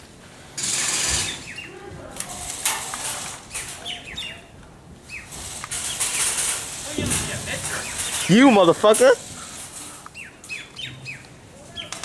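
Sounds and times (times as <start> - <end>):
small birds chirping: 1.2 - 1.9, 3.4 - 12.0.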